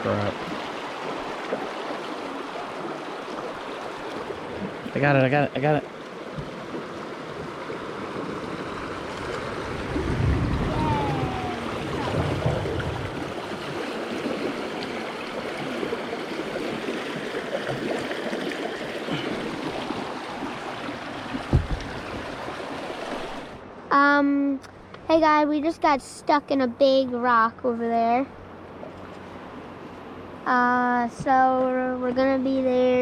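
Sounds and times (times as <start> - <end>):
river water rushing and splashing: 0.0 - 23.9
low thuds: 21.4 - 22.0.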